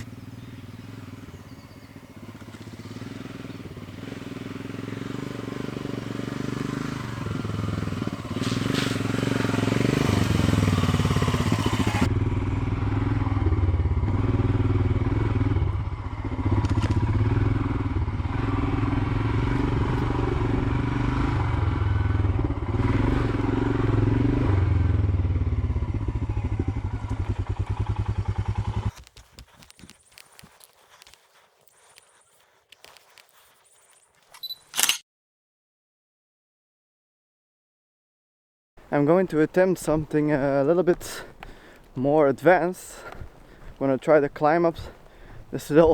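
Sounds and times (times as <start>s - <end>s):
motorcycle engine running: 0.0s - 30.6s, 38.8s - 45.9s.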